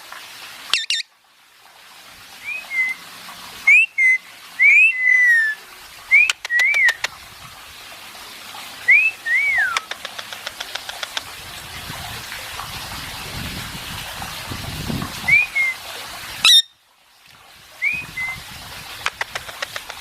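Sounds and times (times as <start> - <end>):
parrot whistling: 2.4 - 3.0, 8.9 - 10.0, 16.4 - 16.7
sharp clicks: 6.2 - 7.2, 9.7 - 11.3, 19.0 - 20.0
faint ticks: 9.8 - 11.3.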